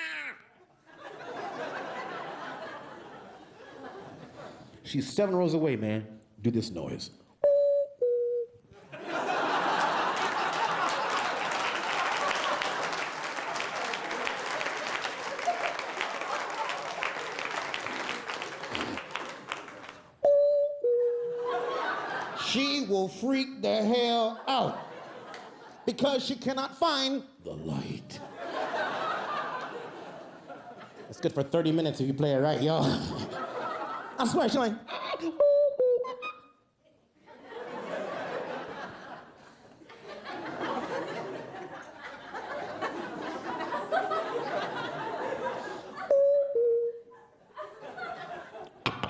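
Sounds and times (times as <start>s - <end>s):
audience laughing: 0.6s - 4.8s, 8.8s - 20.0s, 21.4s - 22.6s, 24.2s - 26.0s, 28.2s - 31.3s, 32.4s - 35.3s, 37.2s - 46.1s, 47.1s - 48.8s
audience applause: 9.6s - 20.1s
mouth-made two-note chime: 46.1s - 47.0s.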